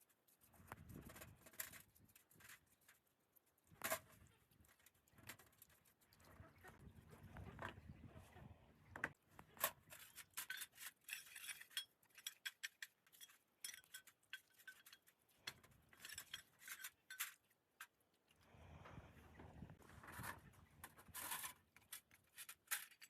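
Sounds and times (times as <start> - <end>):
metal rubbing and scraping: 9.4 - 17.5
small metal parts clinking: 9.6 - 18.0, 21.1 - 23.0.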